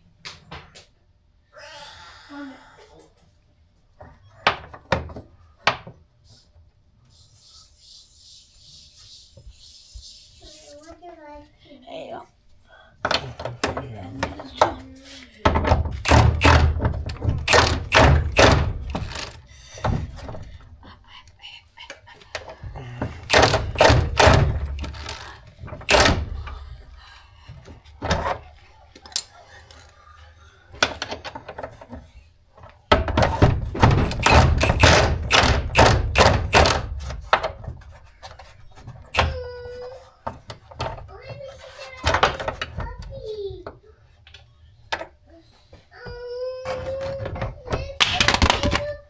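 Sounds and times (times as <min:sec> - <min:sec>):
heavy thuds and knocks: 0:15.4 - 0:20.7, 0:22.6 - 0:28.4, 0:32.9 - 0:37.9.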